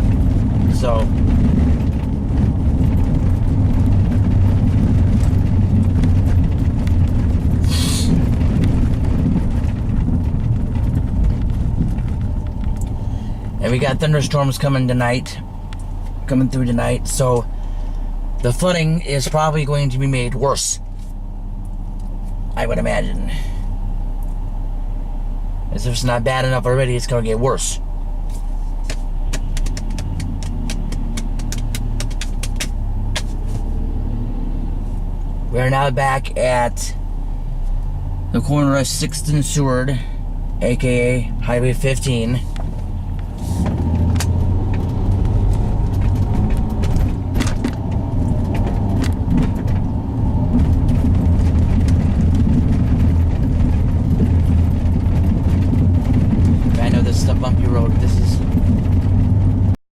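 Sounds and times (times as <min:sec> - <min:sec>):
car engine and road rumble: 0:00.0 - 0:59.8
sharp clicks: 0:29.3 - 0:33.3.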